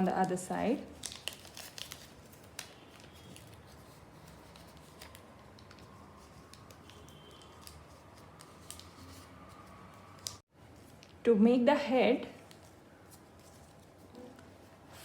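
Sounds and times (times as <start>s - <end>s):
paper rustling and crinkling: 0.0s - 11.2s, 12.4s - 15.0s
sharp paper clicks: 1.0s - 9.1s.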